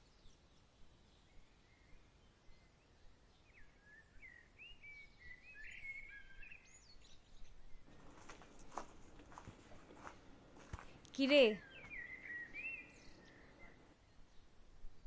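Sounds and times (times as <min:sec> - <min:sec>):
low ambient noise: 0:07.8 - 0:15.0.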